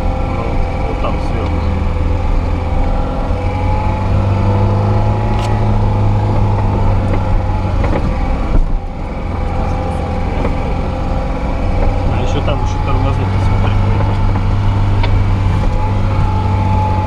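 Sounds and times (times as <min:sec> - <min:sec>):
car engine running at low revs: 0:00.0 - 0:17.0.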